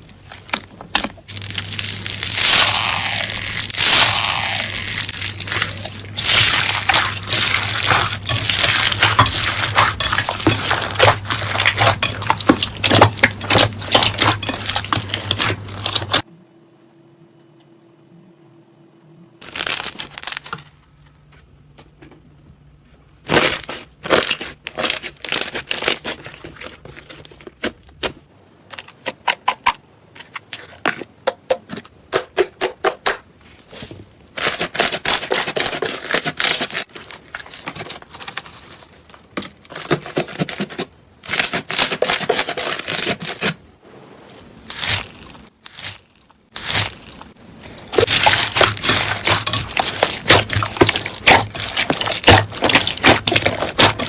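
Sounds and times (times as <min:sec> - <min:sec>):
slime crackling and popping: 0:01.2 - 0:16.2, 0:44.6 - 0:54.0.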